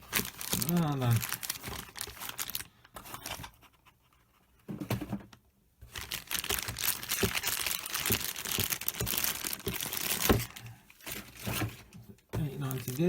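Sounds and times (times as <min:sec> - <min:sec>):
packaging crinkling: 0:00.0 - 0:03.5, 0:05.9 - 0:11.9, 0:12.5 - 0:13.0.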